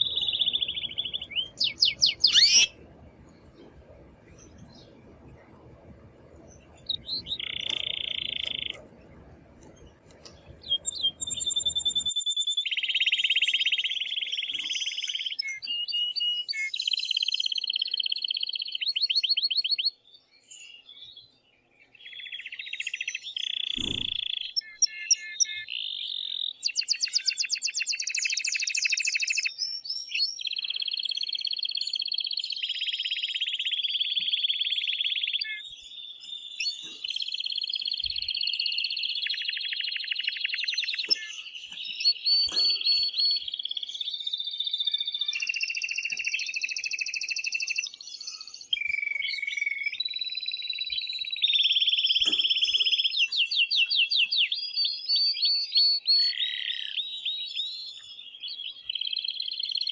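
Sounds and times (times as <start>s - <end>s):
canary singing trills: 0.0s - 5.7s, 6.4s - 59.9s
sharp click: 41.0s - 43.1s.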